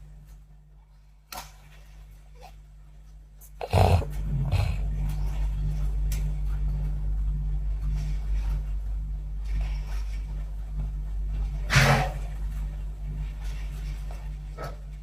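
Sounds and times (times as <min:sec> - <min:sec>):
steady low hum: 0:00.0 - 0:15.0
person snoring with snorts: 0:03.6 - 0:05.1.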